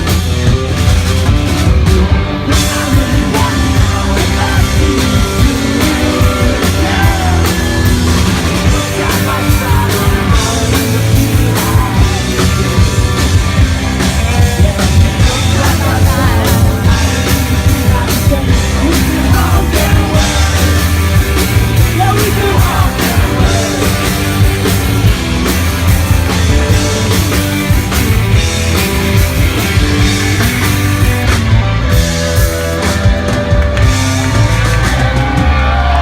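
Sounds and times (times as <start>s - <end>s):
bass guitar: 0.0s - 36.0s
drums: 0.0s - 36.0s
electric guitars: 0.0s - 36.0s
person singing: 2.2s - 13.4s, 14.0s - 24.8s.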